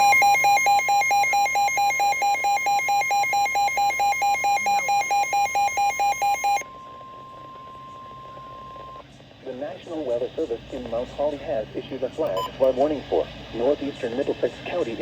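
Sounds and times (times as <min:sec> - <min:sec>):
electronic beeping alarm: 0:00.0 - 0:09.0.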